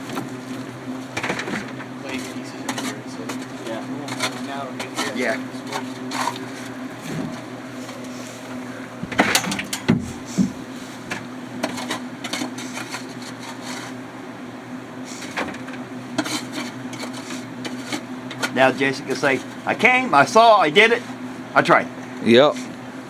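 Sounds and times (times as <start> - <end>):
low machine hum: 0.0 - 23.0
knocks and scrapes of clay: 1.2 - 8.1.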